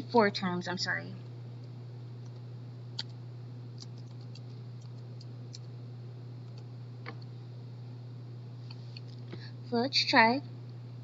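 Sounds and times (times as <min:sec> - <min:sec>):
low electrical hum: 0:00.0 - 0:11.0
computer keys clicking: 0:03.0 - 0:03.2, 0:03.8 - 0:05.7.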